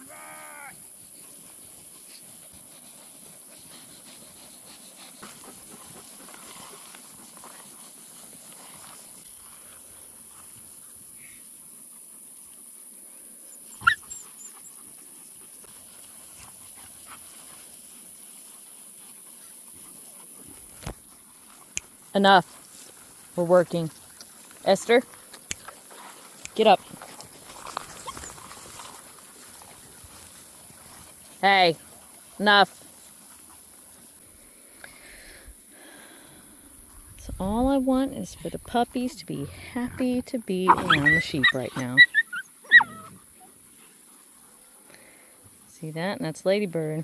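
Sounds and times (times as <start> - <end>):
puppy yipping: 13.8 - 14.6, 40.7 - 43.2.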